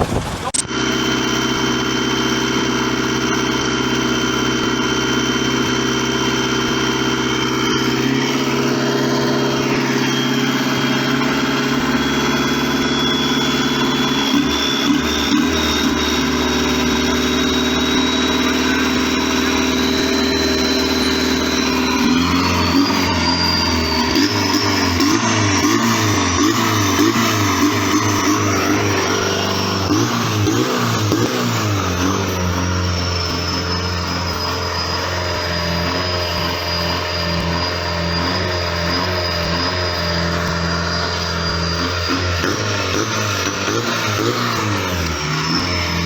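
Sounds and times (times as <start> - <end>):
boat diesel engine running: 0.0 - 46.0
thin high whine: 0.0 - 46.0.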